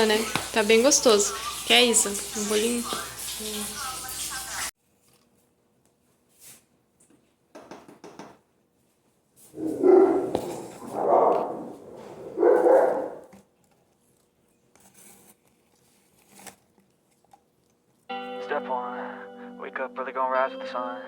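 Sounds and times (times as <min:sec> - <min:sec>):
dog barking: 0:09.6 - 0:13.3.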